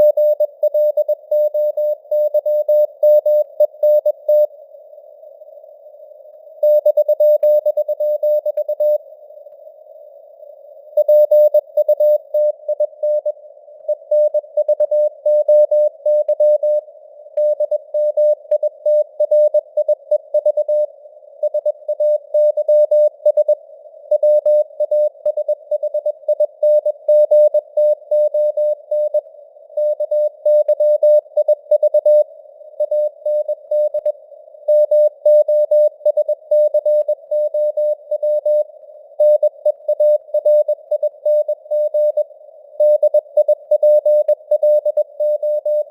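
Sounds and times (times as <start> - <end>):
morse code beeps: 39.2 - 42.2, 42.8 - 45.9.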